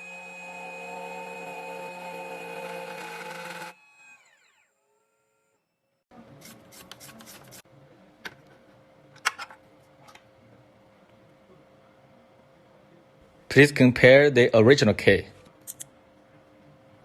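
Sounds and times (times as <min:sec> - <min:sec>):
machine spindle winding down: 0:00.0 - 0:05.6.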